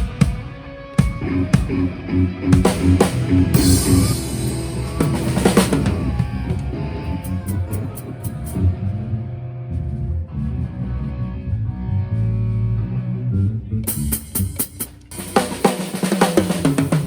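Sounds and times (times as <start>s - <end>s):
drum kit playing: 0.0s - 8.6s, 13.8s - 17.0s
rock music: 0.0s - 9.3s, 13.4s - 17.0s
cymbal crash: 2.6s - 8.0s.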